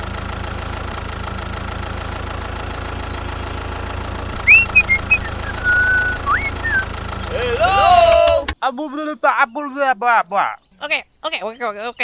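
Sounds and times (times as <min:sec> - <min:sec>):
brief chirps: 0:04.4 - 0:06.9
short rising whistle: 0:04.4 - 0:06.9.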